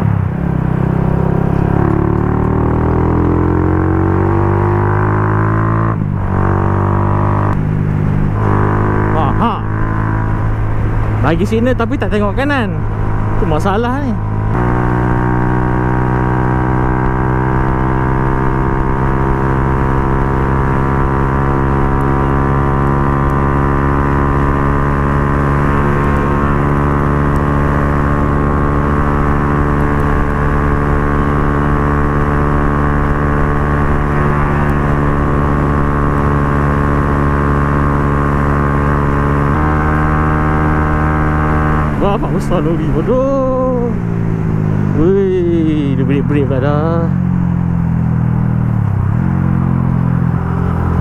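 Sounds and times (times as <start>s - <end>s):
motorcycle cruising: 0.0s - 51.0s.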